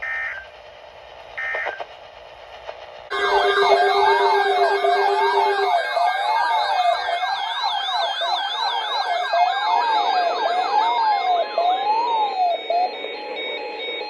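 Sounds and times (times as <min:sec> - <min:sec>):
electronic sirens wailing: 0:03.1 - 0:14.0
yelping siren sweeps: 0:03.1 - 0:14.0.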